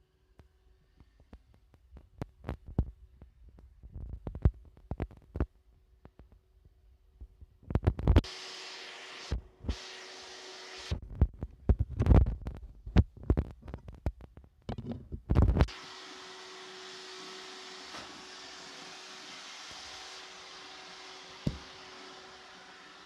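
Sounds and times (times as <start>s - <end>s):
robot vacuum motor whirring: 8.2s - 11.0s, 15.6s - 23.0s
robot vacuum knocking and bumping: 21.4s - 21.7s.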